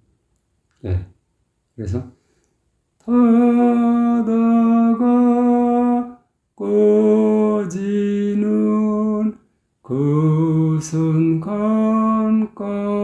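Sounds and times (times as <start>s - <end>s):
person singing unaccompanied: 3.0s - 13.0s.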